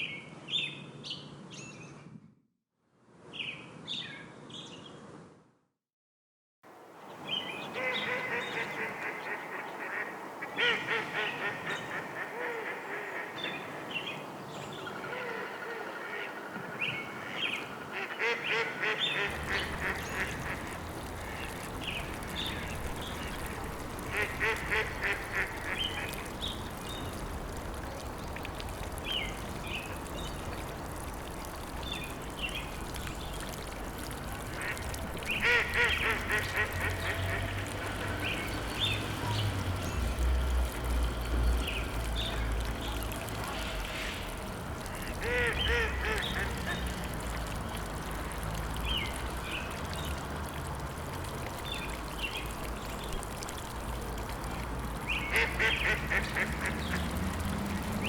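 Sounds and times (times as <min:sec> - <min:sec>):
flowing water rushing: 0:06.7 - 0:58.0
ducks quacking: 0:17.2 - 0:21.6, 0:23.0 - 0:26.3, 0:34.6 - 0:38.2, 0:44.9 - 0:47.0, 0:55.3 - 0:57.2.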